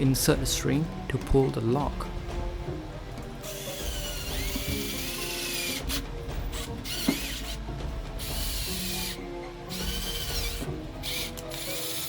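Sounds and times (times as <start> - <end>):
small electric drill whining: 3.4 - 7.6, 8.2 - 12.0.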